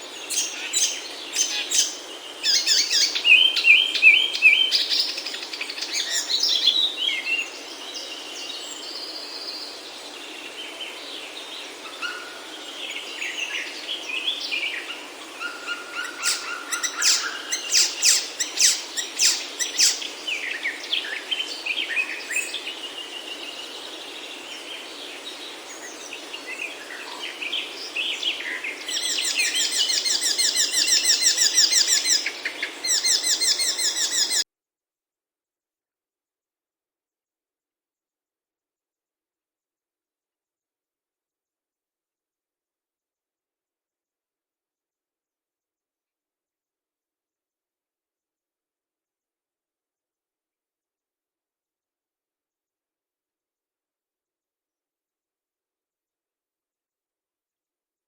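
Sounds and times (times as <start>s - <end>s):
small birds chirping: 0.0s - 34.4s
nestlings twittering: 16.0s - 20.1s, 28.9s - 34.4s.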